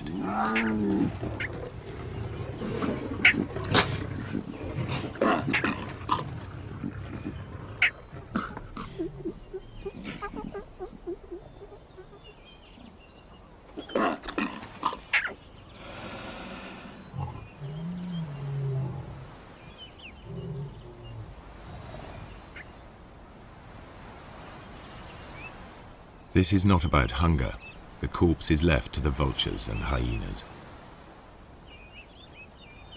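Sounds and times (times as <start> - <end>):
lionesses snarling: 0.0 - 12.4, 13.8 - 22.5.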